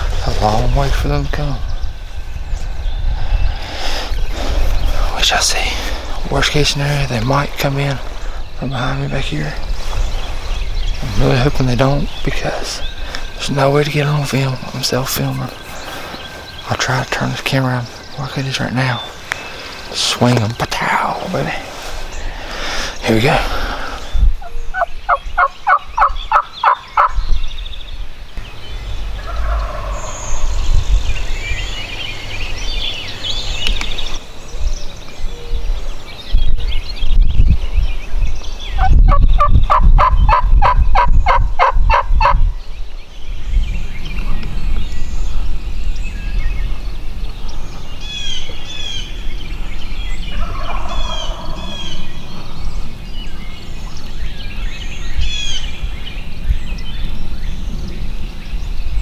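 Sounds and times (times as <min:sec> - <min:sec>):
small birds chirping: 0:00.0 - 0:59.0
turkey yelping: 0:24.4 - 0:27.1, 0:29.1 - 0:30.4, 0:50.4 - 0:52.0.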